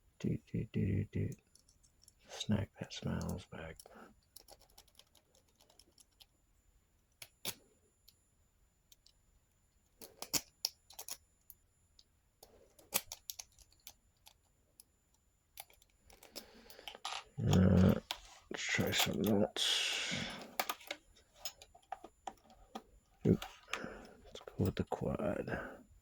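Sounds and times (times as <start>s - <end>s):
lock pick clicking and scraping: 4.2s - 6.3s, 10.0s - 11.2s, 12.4s - 14.9s, 15.6s - 18.2s, 20.2s - 24.7s.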